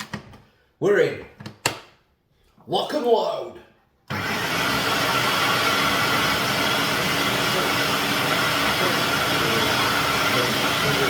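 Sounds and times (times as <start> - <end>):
electric blender running: 4.1 - 11.0.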